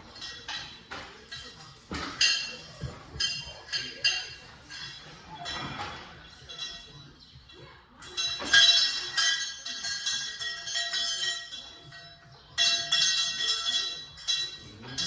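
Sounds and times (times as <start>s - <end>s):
cowbell clanking: 8.1s - 15.0s.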